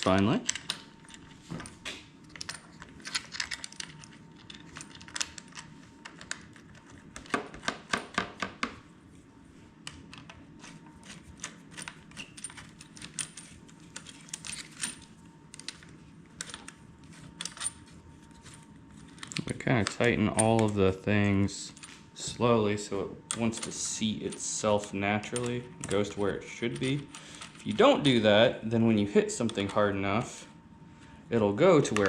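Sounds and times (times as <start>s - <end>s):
metal hardware clicking and rattling: 2.3s - 6.4s, 11.7s - 15.8s, 17.4s - 17.8s, 23.3s - 28.2s.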